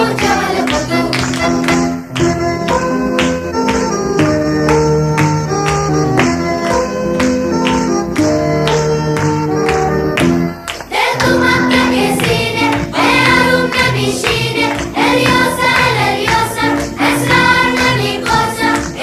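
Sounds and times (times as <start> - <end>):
choir singing over a beat: 0.0 - 1.8, 10.7 - 19.0
instrumental music: 0.0 - 19.0.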